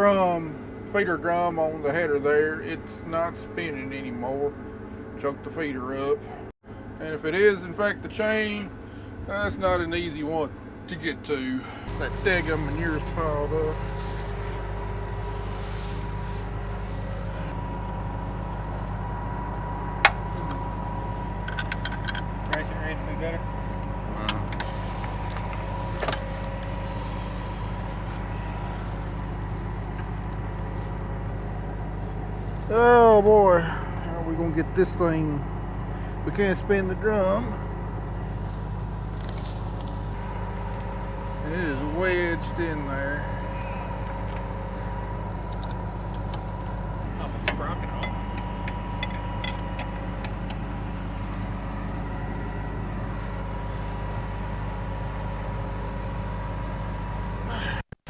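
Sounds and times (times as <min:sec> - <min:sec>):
combine engine humming: 0:00.0 - 0:58.0
short hisses: 0:11.8 - 0:17.6.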